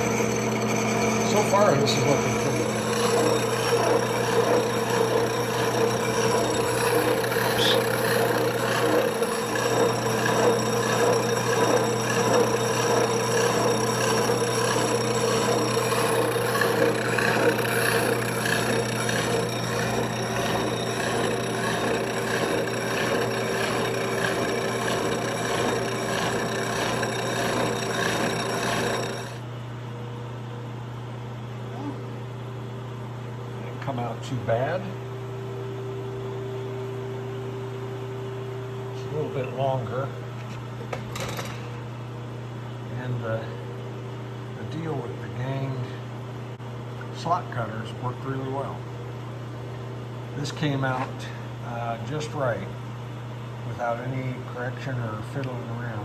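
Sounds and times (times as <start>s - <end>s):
milling machine motor hum: 0.0s - 29.5s
rough grinding cutting noise: 0.0s - 29.5s.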